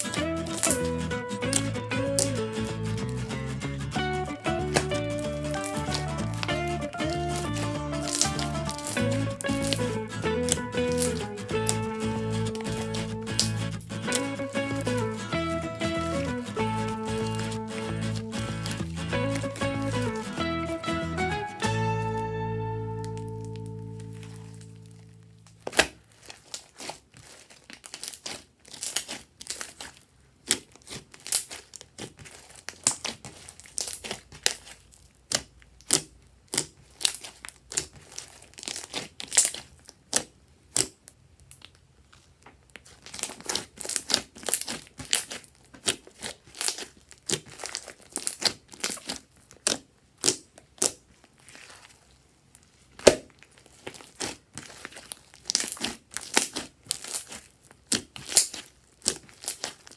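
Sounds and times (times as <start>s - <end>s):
slime crackling clicks: 4.5s - 20.3s.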